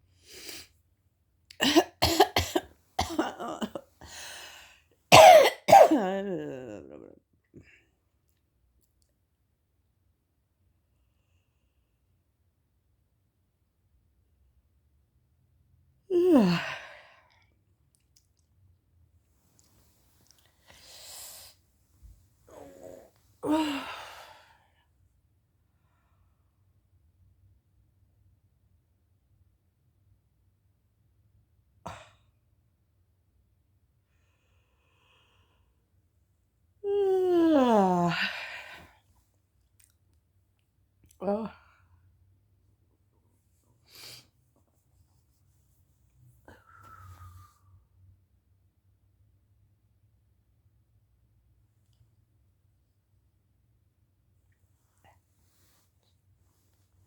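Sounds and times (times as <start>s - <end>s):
woman coughing: 1.6s - 3.9s, 5.1s - 7.0s
woman yawning: 3.0s - 4.4s, 5.8s - 7.1s, 16.1s - 17.0s, 22.5s - 24.4s, 36.9s - 38.8s
faint breath: 46.5s - 47.9s.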